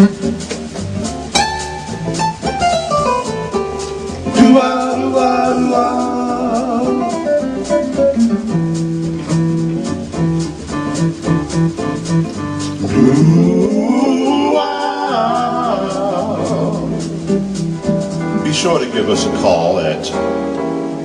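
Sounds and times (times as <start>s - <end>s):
man singing: 4.3s - 7.5s, 12.8s - 17.3s.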